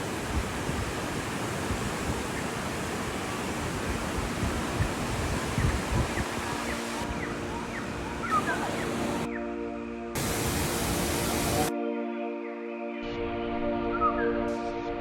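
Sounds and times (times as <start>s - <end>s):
wind buffeting microphone: 0.0s - 9.2s
waterfall rushing: 0.0s - 9.3s, 10.2s - 11.7s
background music: 7.0s - 15.0s.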